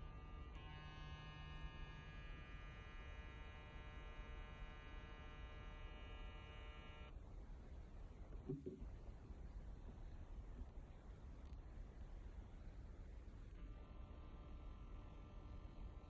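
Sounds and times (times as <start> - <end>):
electric hair clipper buzzing: 0.0 - 7.1.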